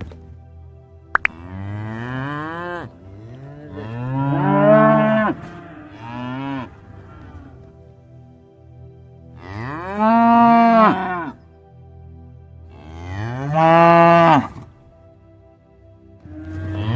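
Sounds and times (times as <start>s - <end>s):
cattle mooing: 1.2s - 7.7s, 9.4s - 11.4s, 12.7s - 14.7s, 16.2s - 16.9s.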